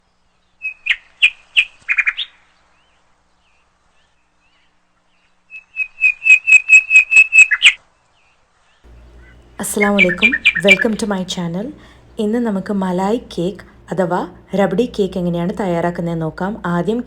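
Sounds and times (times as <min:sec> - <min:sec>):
bird chirping: 0:08.9 - 0:11.3.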